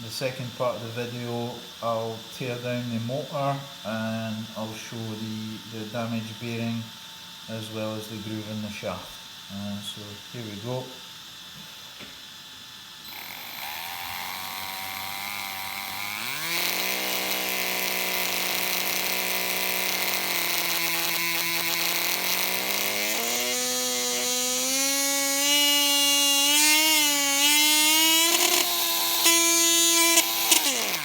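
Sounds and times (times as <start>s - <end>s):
electric motor whine: 13.0s - 31.0s
harsh buzz: 13.0s - 31.0s.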